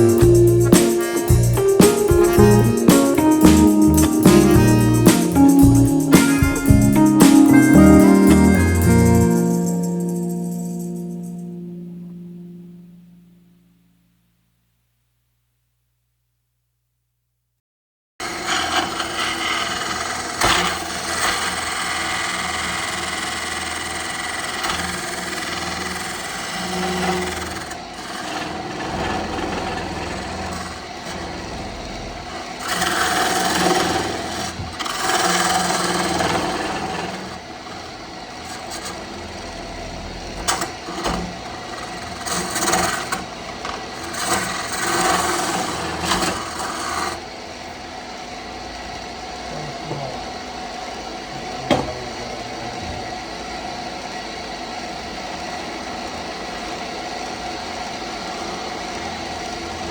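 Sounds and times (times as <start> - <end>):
wood lathe hum: 18.4 - 47.3
lathe tool cutting wood: 22.8 - 39.6.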